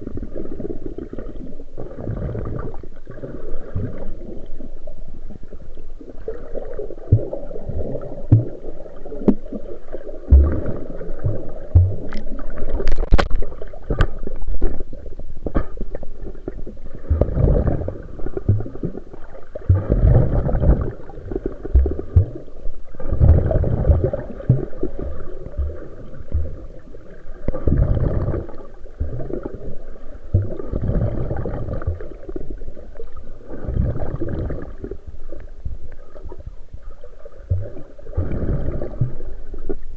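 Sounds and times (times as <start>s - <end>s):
sea water surging and sloshing: 0.0s - 39.9s
low rumble: 10.3s - 19.1s.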